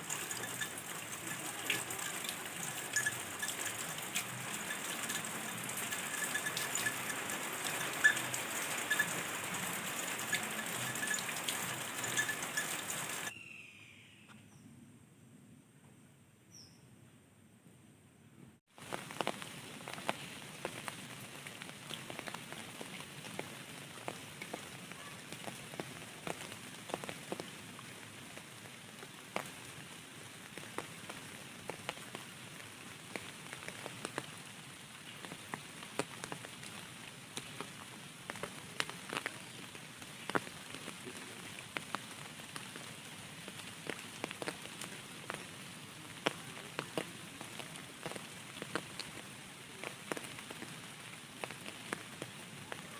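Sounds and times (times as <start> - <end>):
rain drops striking surface: 0.0 - 13.3, 18.7 - 52.9.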